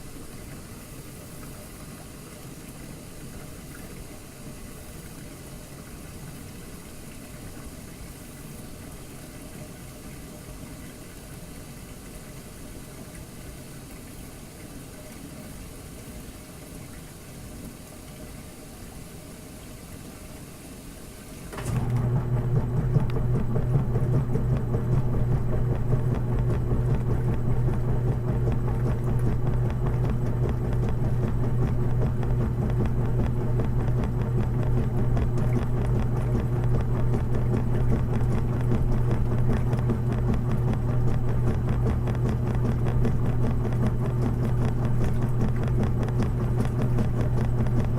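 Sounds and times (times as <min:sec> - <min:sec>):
washing machine motor humming: 0:00.0 - 0:47.9.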